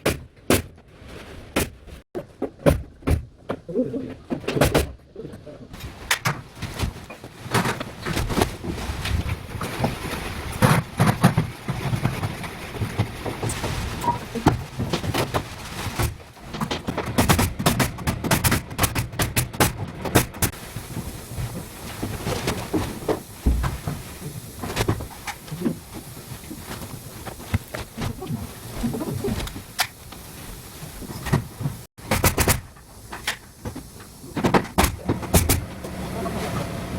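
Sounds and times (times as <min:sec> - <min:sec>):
sharp knocks and clicks: 0:16.6 - 0:20.6.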